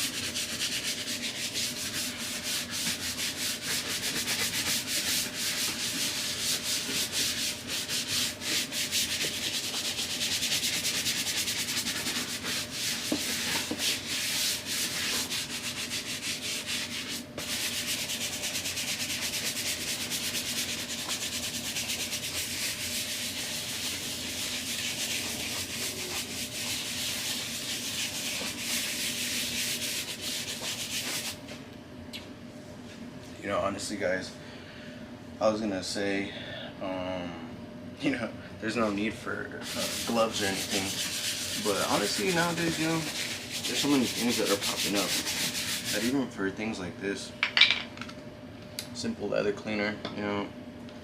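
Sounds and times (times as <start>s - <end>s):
brush scrubbing leather seat: 0.0s - 31.6s, 39.6s - 46.1s.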